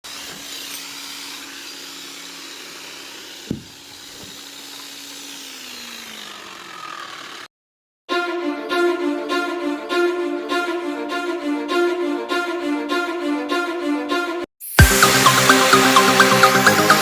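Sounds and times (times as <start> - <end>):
concrete saw whining: 0.0 - 7.5
sharp knock: 3.5 - 3.7
violin music: 8.1 - 17.0.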